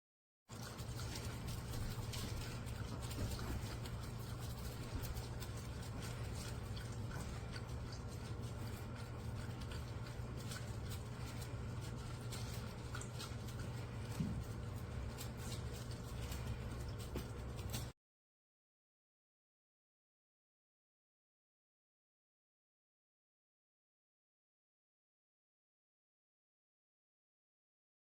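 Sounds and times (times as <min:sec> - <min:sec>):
low steady hum: 0:00.5 - 0:17.9
pet lapping water: 0:00.5 - 0:17.9.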